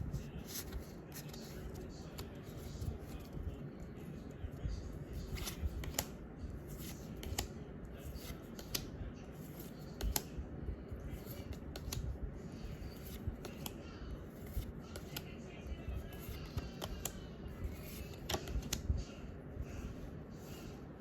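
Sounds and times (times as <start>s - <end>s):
trading cards snapping and rustling: 0.1s - 3.4s, 5.2s - 10.4s, 11.2s - 12.1s, 12.8s - 13.8s, 14.4s - 15.3s, 16.0s - 18.9s.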